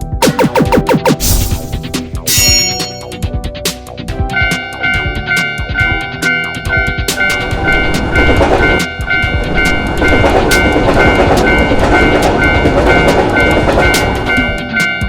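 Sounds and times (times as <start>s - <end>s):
level-crossing electronic bell: 0.3s - 3.3s, 4.3s - 15.0s
train wheels clattering over rails: 4.5s - 15.0s.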